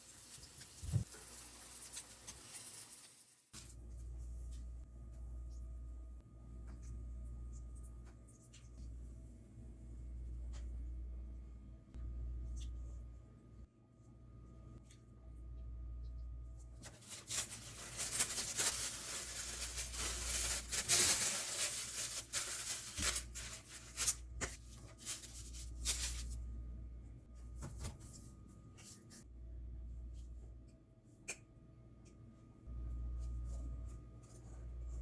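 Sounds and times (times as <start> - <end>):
low steady hum: 3.6 - 35.0
rustling and scraping food preparation: 16.1 - 26.5, 32.7 - 35.0.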